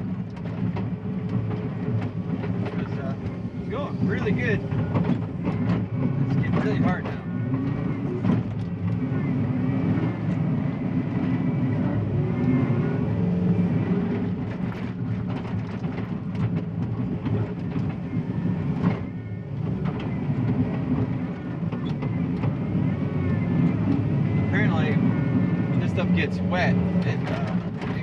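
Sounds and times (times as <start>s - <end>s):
diesel engine working under load: 0.0s - 28.0s
machine clanks and rattles: 0.2s - 9.0s, 14.1s - 22.6s, 26.8s - 28.0s.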